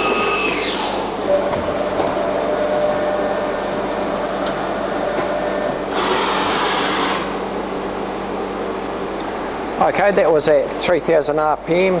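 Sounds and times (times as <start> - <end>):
machining spindle whine: 0.0 - 7.6
constant machine hum: 0.0 - 12.0.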